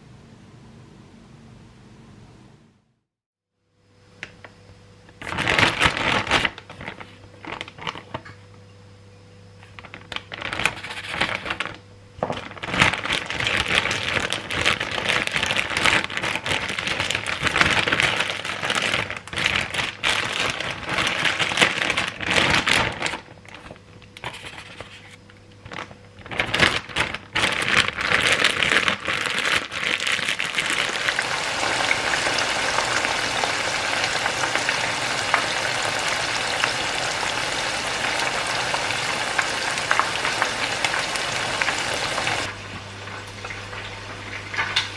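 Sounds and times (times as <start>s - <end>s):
chicken deep-frying in oil: 9.7s - 25.2s, 26.2s - 44.9s.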